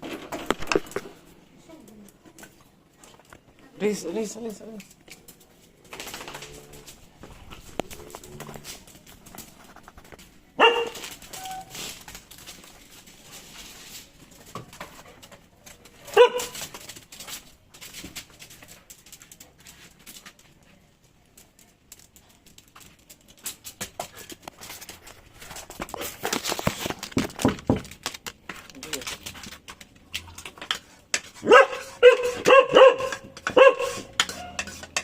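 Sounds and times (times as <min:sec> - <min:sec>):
dog barking: 0:10.6 - 0:11.1, 0:16.1 - 0:16.6, 0:31.4 - 0:34.6.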